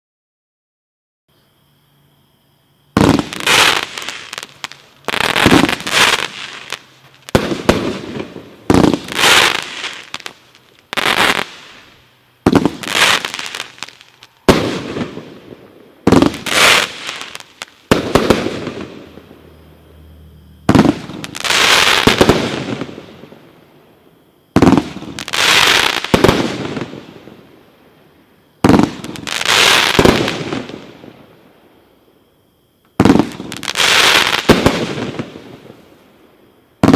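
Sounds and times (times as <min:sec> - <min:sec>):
fireworks crackling: 0:02.9 - 0:19.5, 0:20.6 - 0:23.6, 0:24.5 - 0:27.9, 0:28.6 - 0:31.5, 0:32.9 - 0:36.9
fireworks banging: 0:03.0 - 0:19.4, 0:20.6 - 0:23.2, 0:24.5 - 0:27.3, 0:28.6 - 0:31.0, 0:33.0 - 0:35.7.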